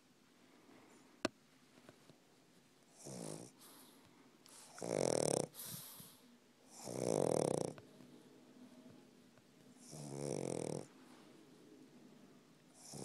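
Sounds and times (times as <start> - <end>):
dog snoring: 2.9 - 7.8, 9.8 - 10.9, 12.7 - 13.0.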